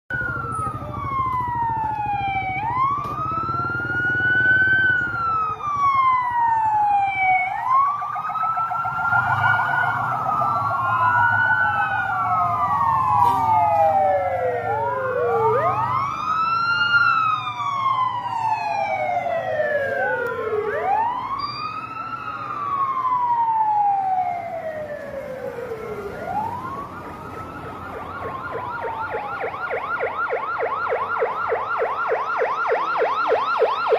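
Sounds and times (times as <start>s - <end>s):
police sirens wailing: 0.1s - 33.9s
siren fast yelp: 0.1s - 33.9s.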